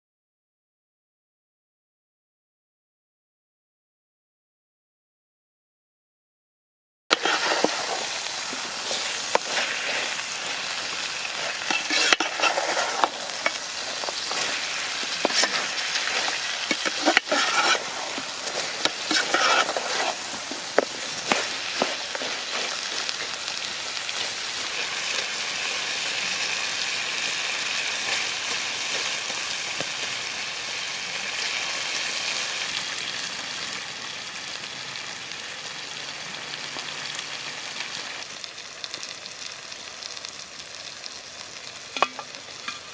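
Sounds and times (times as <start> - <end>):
scraping strokes in a pan: 7.1 - 30.2
chicken sizzling in a pan: 7.1 - 42.9.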